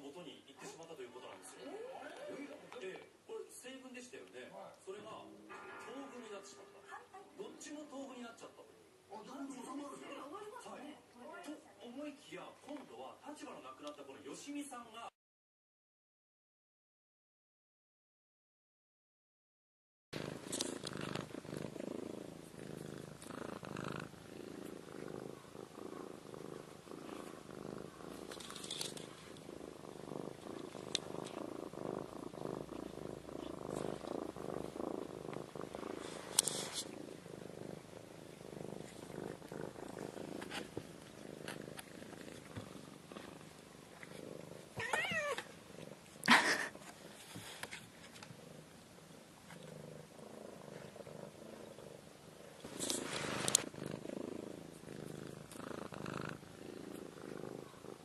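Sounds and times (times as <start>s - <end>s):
kitten purring: 20.2s - 58.0s.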